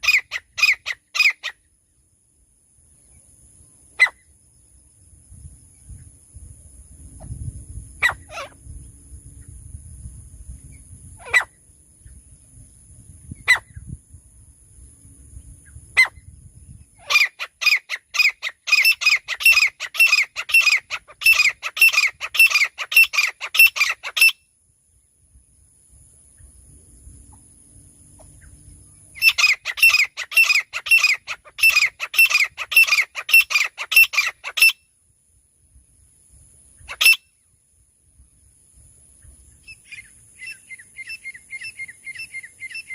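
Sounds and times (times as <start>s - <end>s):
francolin calling harshly: 0.0s - 1.7s, 3.9s - 4.3s, 7.9s - 8.7s, 10.7s - 12.2s, 13.3s - 14.0s, 15.6s - 24.5s, 28.2s - 35.0s, 36.7s - 37.5s, 39.2s - 42.9s.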